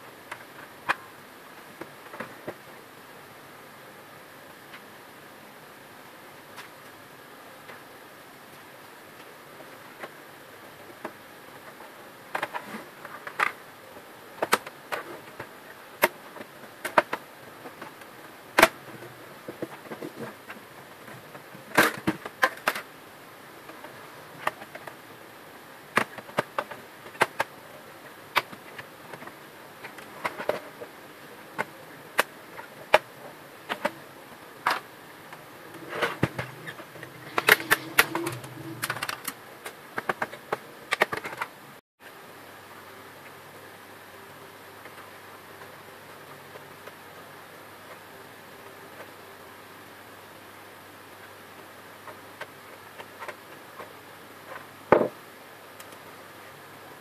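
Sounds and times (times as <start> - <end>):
laser printer whirring: 34.9 - 39.3.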